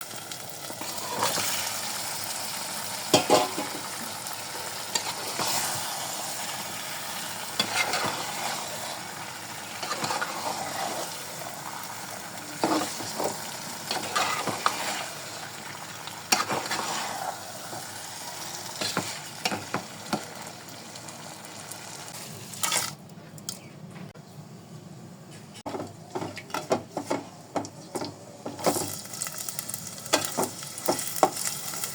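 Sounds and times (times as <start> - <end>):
food sizzling in oil: 0.0 - 22.9, 28.5 - 31.9
spoon scraping a pan: 3.1 - 3.9, 4.9 - 6.0, 7.5 - 9.1, 9.7 - 15.5, 16.3 - 18.0, 18.8 - 20.3.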